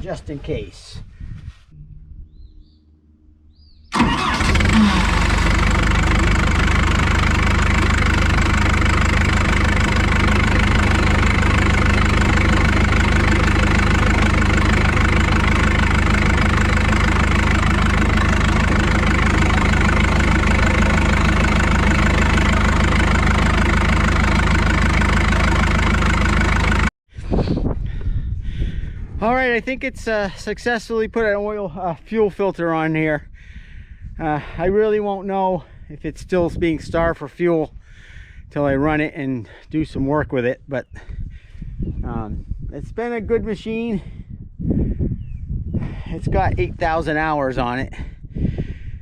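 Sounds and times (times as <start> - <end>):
diesel engine idling: 3.9 - 26.9.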